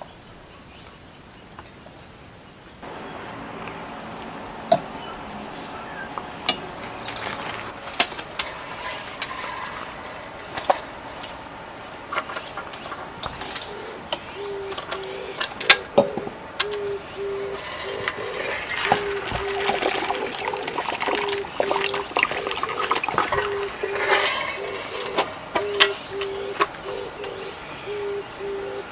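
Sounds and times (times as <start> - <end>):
watery splashing hiss: 2.8 - 14.0, 16.4 - 27.2.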